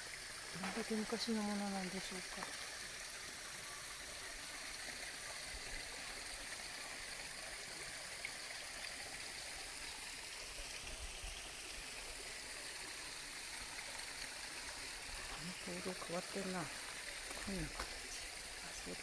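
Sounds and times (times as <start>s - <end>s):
stream water rushing: 0.0s - 19.0s.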